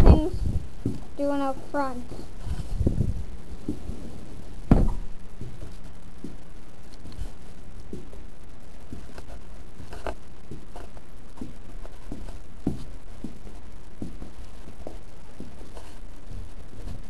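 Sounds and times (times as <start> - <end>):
wind buffeting microphone: 0.0 - 0.8, 2.7 - 3.3
footsteps: 0.0 - 1.2, 2.1 - 17.0.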